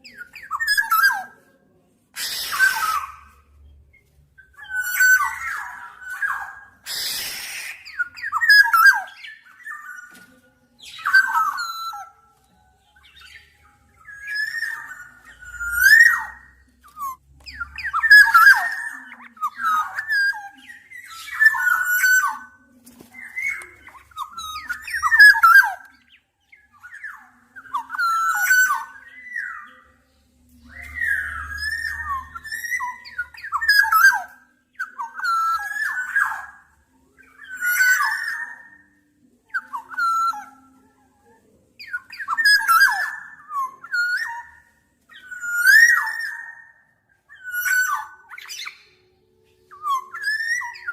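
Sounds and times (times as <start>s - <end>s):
bird fluty whistles: 2.2s - 3.4s, 4.6s - 10.1s, 14.0s - 22.5s, 30.7s - 36.6s, 45.2s - 46.8s.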